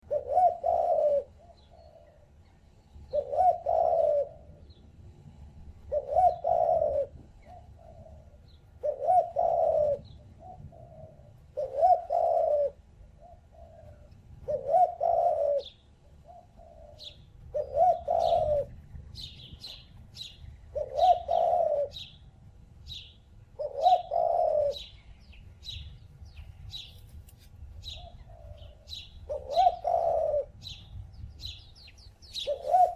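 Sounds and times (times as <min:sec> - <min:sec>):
dove cooing: 0:00.0 - 0:22.3, 0:22.9 - 0:25.9, 0:27.8 - 0:32.9
small birds chirping: 0:13.2 - 0:32.9.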